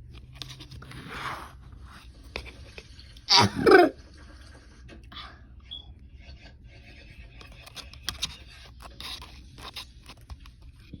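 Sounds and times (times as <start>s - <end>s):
faint scraping and rustling: 6.1s - 11.0s.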